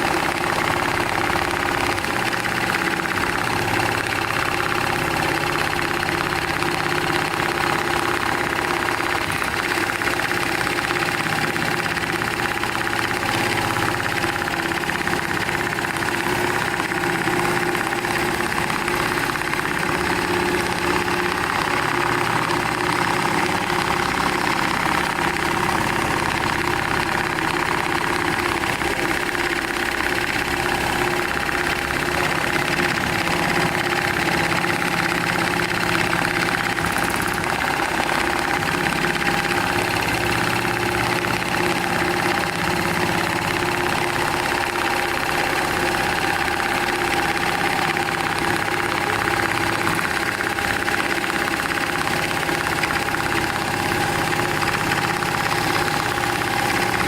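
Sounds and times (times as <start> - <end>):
sewing machine whirring: 0.0 - 57.0.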